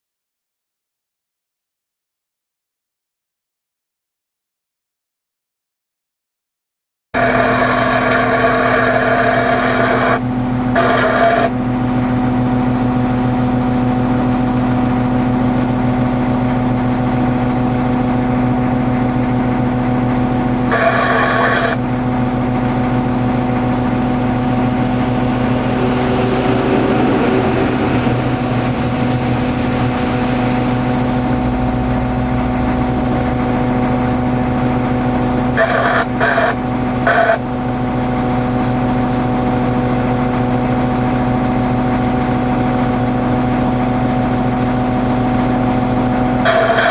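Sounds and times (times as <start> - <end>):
diesel engine droning: 7.2 - 46.9
higher broken sound bursts: 20.2 - 37.7, 46.4 - 46.9.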